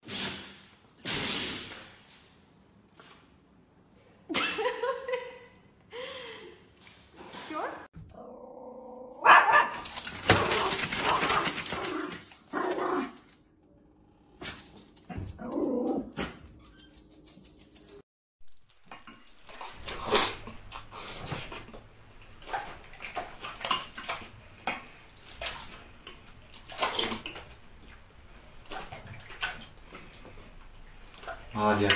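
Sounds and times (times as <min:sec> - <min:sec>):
dogs barking: 0:09.2 - 0:09.9.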